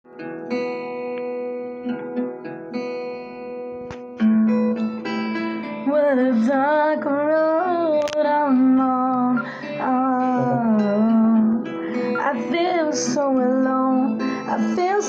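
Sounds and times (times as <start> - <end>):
guitar: 0.0 - 15.0
person singing: 5.8 - 15.0.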